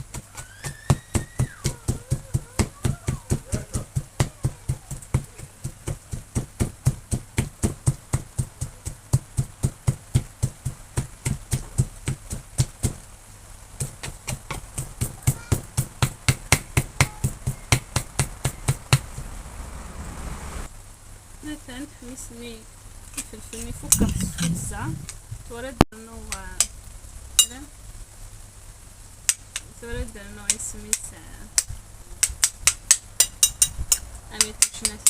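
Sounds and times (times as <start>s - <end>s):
pestle pounding in a mortar: 0.0s - 13.1s, 13.8s - 19.3s, 31.6s - 35.0s.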